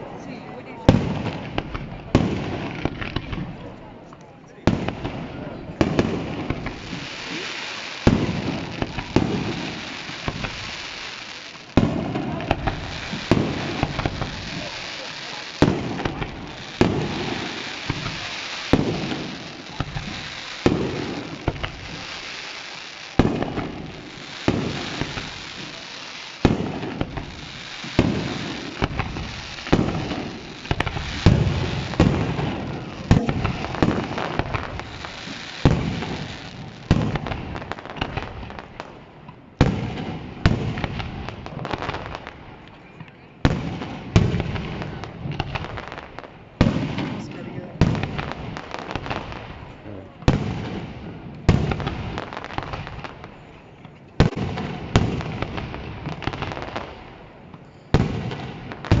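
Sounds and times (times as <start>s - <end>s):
firework crackle: 0.0s - 59.0s
firework shells bursting: 5.8s - 49.6s.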